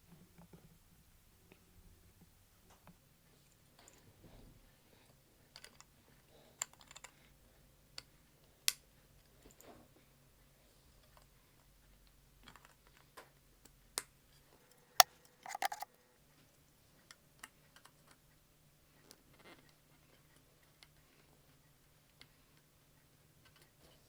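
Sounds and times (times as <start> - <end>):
brief rattling: 15.5 - 15.8
light clicks and taps handling plastic: 15.5 - 15.8.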